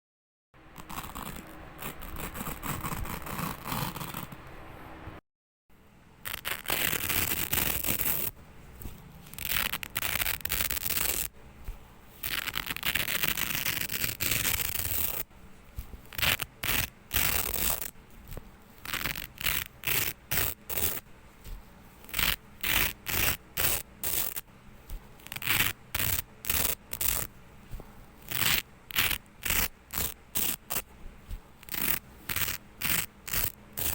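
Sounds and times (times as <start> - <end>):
velcro ripping apart: 6.2 - 8.3, 9.2 - 11.3, 12.2 - 15.2, 16.1 - 18.0, 18.8 - 21.0, 22.0 - 24.4, 25.2 - 27.3, 28.2 - 30.9, 31.6 - 33.9.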